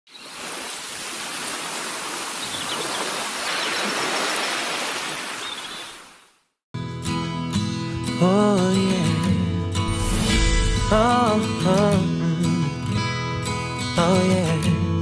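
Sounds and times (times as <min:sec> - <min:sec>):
water rushing: 0:00.1 - 0:06.2.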